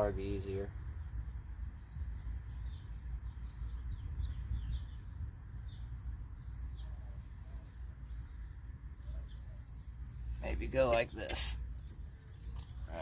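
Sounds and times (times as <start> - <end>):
small bird chirping: 0.0 - 13.0.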